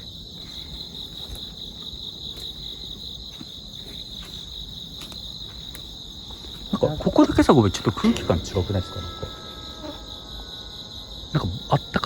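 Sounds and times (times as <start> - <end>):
crickets chirping: 0.0 - 12.0.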